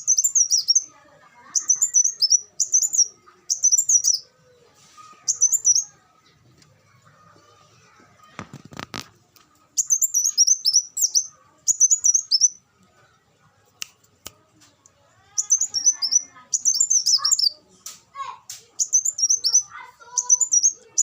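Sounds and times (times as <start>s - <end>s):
bird twittering: 0.0s - 0.9s, 1.5s - 4.2s, 5.3s - 5.9s, 9.8s - 12.6s, 15.4s - 17.6s, 18.8s - 21.0s.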